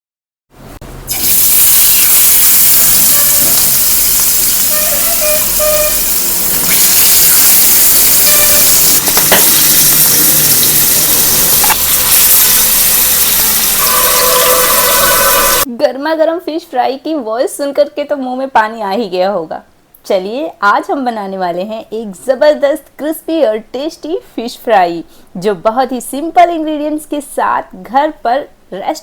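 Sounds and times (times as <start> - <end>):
fish frying in hot oil: 1.1 - 14.0.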